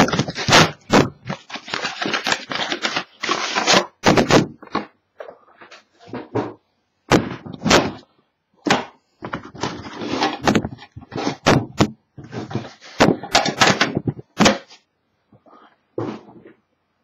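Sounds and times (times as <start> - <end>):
cardboard rustling: 0.0 - 6.4, 9.2 - 14.8.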